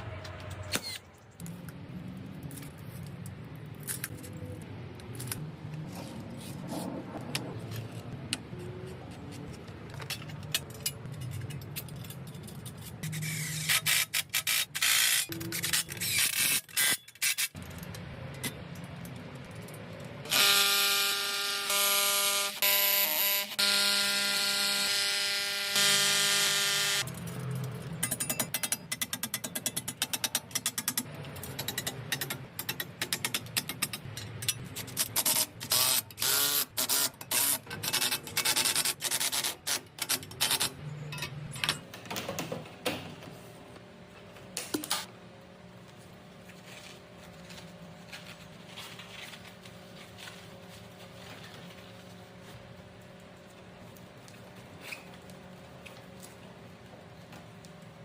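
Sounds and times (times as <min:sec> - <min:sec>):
parts and tools rattling: 0:09.1 - 0:20.2, 0:27.0 - 0:43.1
power tool whining: 0:20.3 - 0:27.1.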